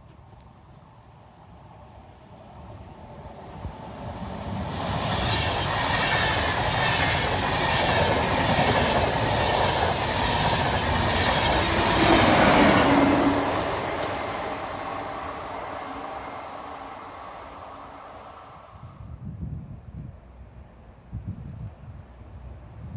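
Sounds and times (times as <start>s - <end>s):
train rumbling past: 1.7s - 19.2s.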